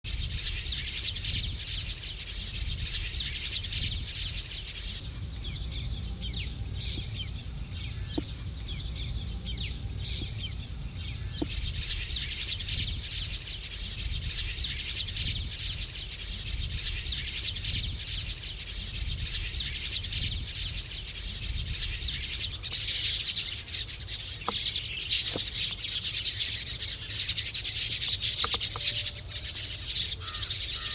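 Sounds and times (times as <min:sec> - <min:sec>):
crickets chirping: 0:00.1 - 0:30.9
small birds chirping: 0:00.1 - 0:30.9
low rumble: 0:04.9 - 0:13.0.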